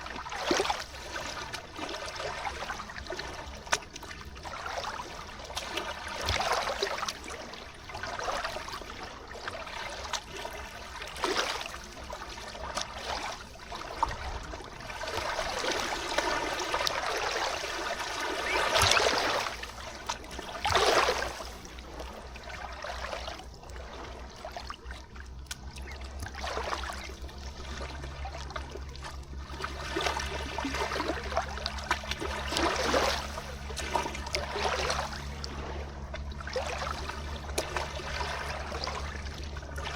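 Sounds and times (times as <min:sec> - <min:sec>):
river water lapping at shore: 0:00.0 - 0:39.9.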